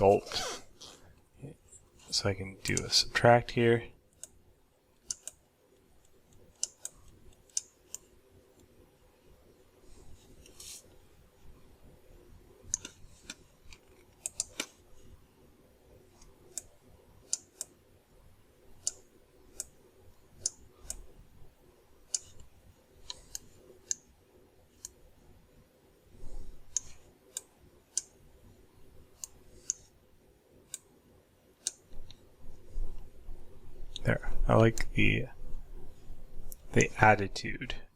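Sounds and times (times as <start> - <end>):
faint steady hum: 0.0 - 37.9
mouse and keyboard clicking: 5.0 - 5.4, 6.0 - 8.7, 12.7 - 14.8, 18.8 - 19.8, 22.1 - 24.0.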